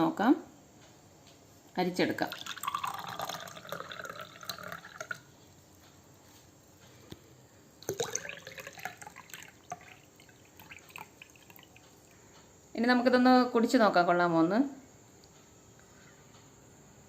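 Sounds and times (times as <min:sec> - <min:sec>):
juice pouring through a strainer: 0:02.1 - 0:05.3, 0:07.8 - 0:12.2.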